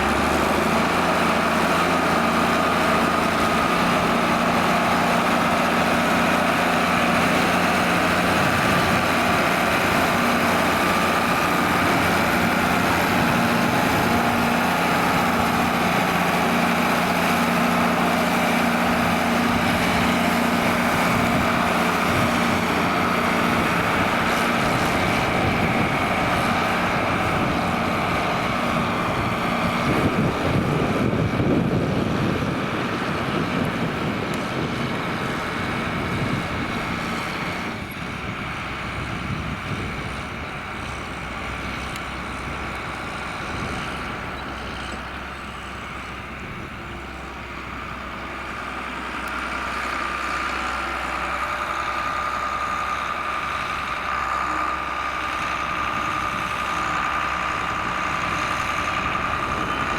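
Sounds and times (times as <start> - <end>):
tractor diesel engine under load: 0.0 - 59.9.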